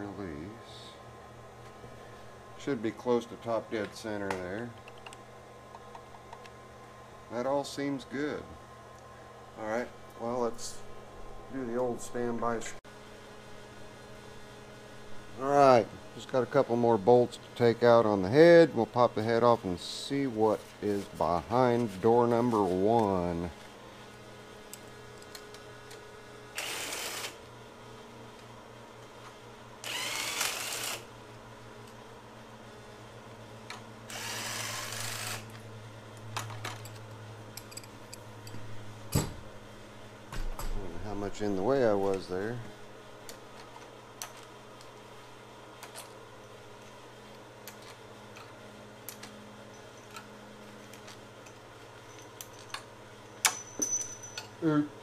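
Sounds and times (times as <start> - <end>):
steady low hum: 0.0 - 55.0
power tool spinning out bolts: 26.6 - 27.4, 29.8 - 31.1, 34.1 - 35.6.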